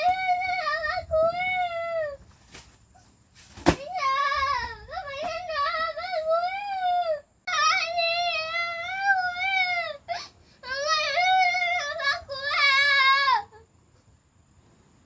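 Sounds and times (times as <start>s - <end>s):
child singing long wavering notes: 0.0s - 2.2s, 3.8s - 13.7s
child breathing: 10.1s - 10.7s.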